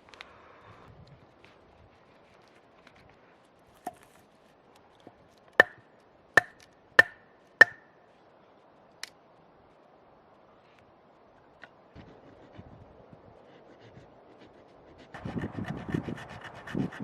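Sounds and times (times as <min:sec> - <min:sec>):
tool chopping wood: 0:05.6 - 0:05.8, 0:06.4 - 0:07.8.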